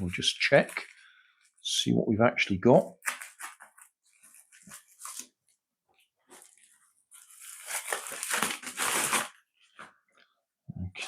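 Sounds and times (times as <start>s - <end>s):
package packaging crinkling and tearing: 3.0s - 5.4s, 6.3s - 9.4s.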